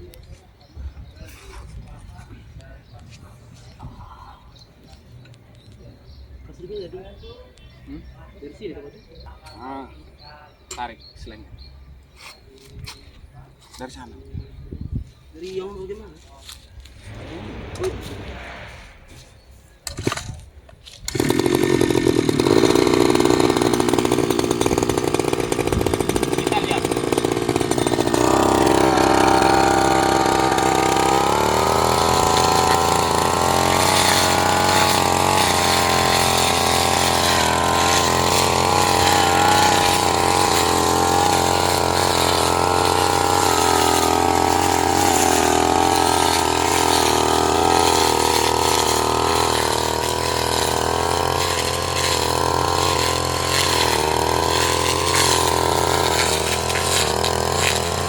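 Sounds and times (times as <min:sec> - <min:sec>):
small petrol engine running: 0:19.9 - 0:20.3, 0:20.9 - 0:58.0.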